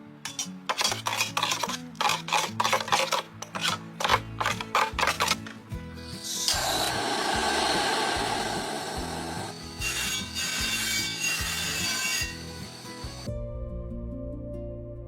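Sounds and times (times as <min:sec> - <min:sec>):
scraping and rasping: 0:00.3 - 0:05.6, 0:06.2 - 0:12.5.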